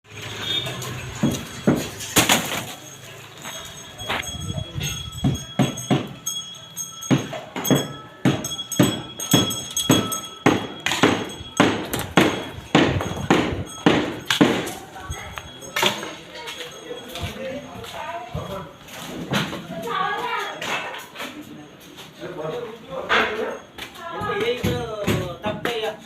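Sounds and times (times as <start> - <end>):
metallic clanks and knocks: 0.3 - 16.2.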